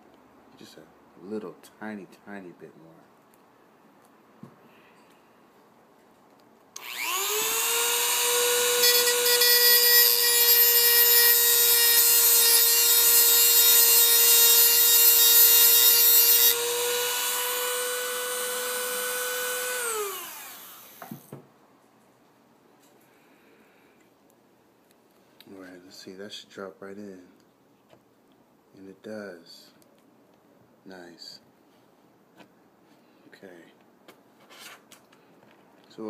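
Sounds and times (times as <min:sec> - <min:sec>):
rotary tool grinding metal rail: 0:06.8 - 0:21.0.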